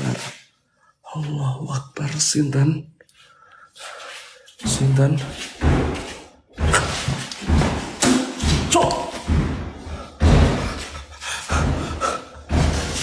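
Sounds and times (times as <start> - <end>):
heavy thumps and bangs: 4.6 - 13.0
man exclaiming: 8.7 - 9.2.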